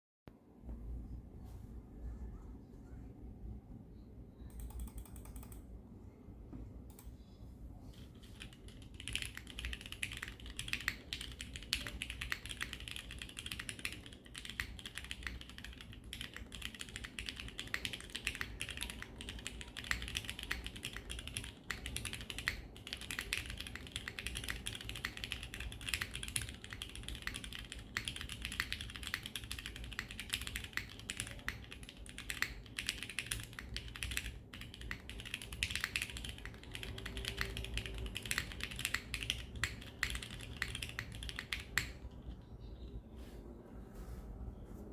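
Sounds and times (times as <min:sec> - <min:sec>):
mechanical keyboard typing: 0:04.5 - 0:05.7, 0:08.2 - 0:42.4.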